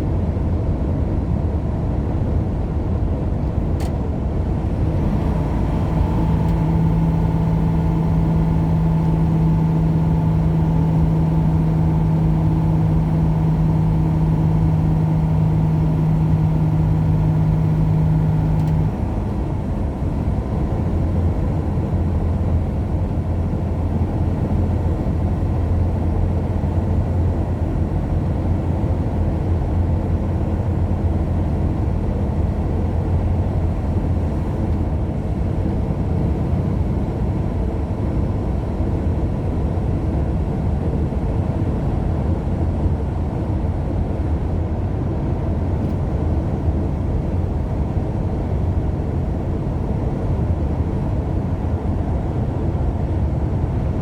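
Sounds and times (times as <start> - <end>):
road rumble: 0.2 - 38.0, 40.7 - 54.0
car engine drone: 3.4 - 37.2, 45.2 - 54.0.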